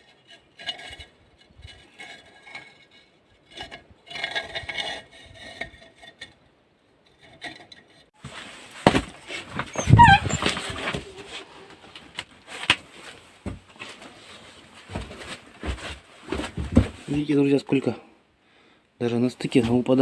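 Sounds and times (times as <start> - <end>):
metal chimney pipe scraped and rattled: 0.0 - 6.4
falling squeak: 9.6 - 11.2.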